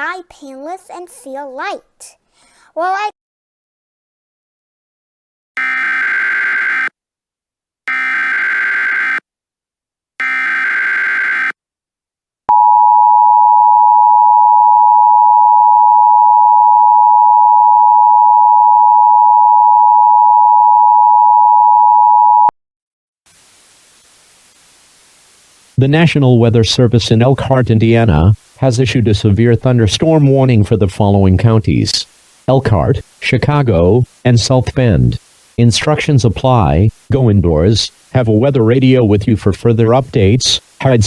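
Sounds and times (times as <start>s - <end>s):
faint static hiss: 23.3s - 41.0s.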